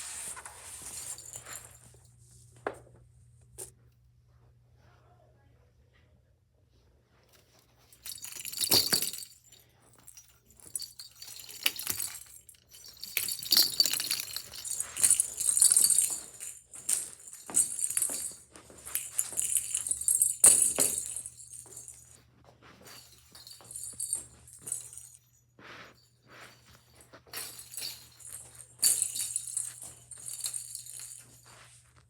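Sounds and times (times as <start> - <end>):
small metal pieces jingling: 8.0 - 22.1, 27.3 - 31.6.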